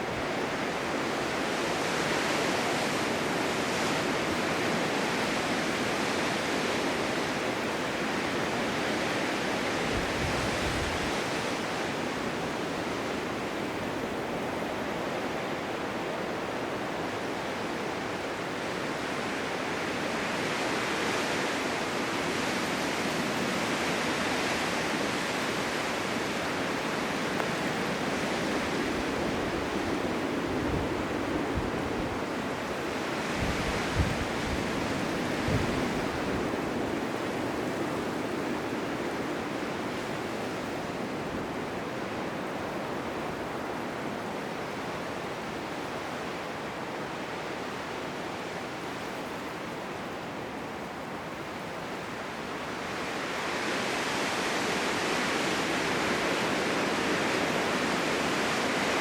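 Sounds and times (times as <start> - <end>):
blizzard wind blowing: 0.0 - 59.0.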